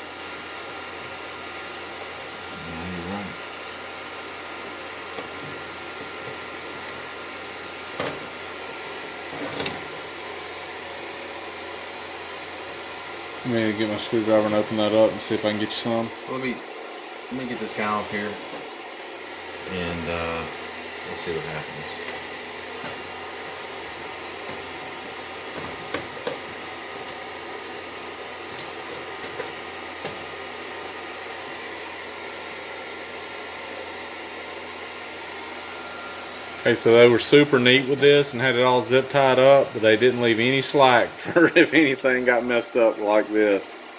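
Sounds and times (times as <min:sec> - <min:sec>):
faint hum: 0:01.6 - 0:30.2.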